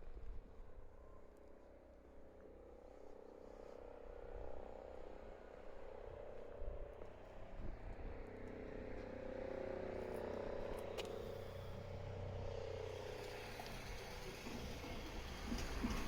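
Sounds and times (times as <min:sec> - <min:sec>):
faint passing vehicle hum: 0:08.6 - 0:16.0.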